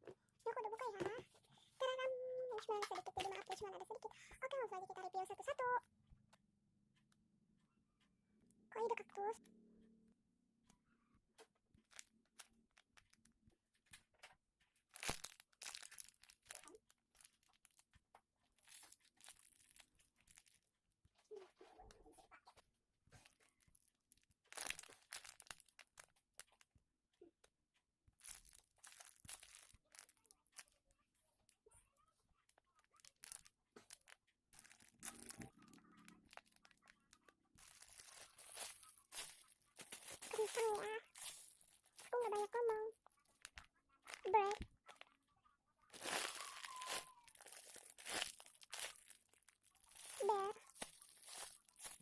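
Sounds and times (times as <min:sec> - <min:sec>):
plastic packaging crinkling: 0:02.5 - 0:04.0, 0:14.9 - 0:20.7, 0:23.2 - 0:26.6, 0:28.2 - 0:30.8, 0:32.9 - 0:45.2, 0:45.9 - 0:52.0.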